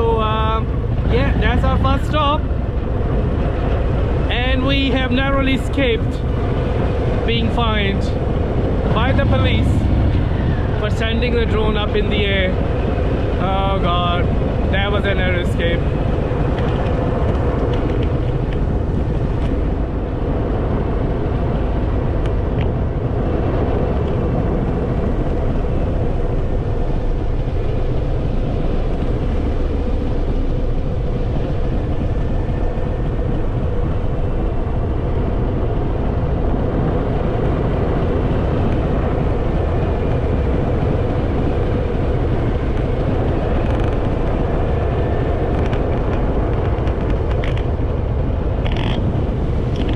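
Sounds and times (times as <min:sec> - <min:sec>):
motorcycle engine running: 0:00.0 - 0:03.4, 0:08.0 - 0:12.0
wind noise on microphone: 0:00.0 - 0:49.9.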